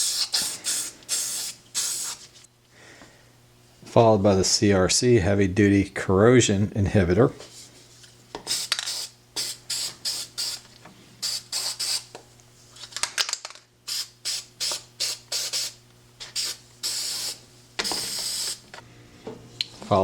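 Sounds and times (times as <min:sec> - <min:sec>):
aerosol can hissing bursts: 0:00.0 - 0:02.3, 0:08.5 - 0:10.6, 0:11.2 - 0:12.1, 0:13.9 - 0:18.7.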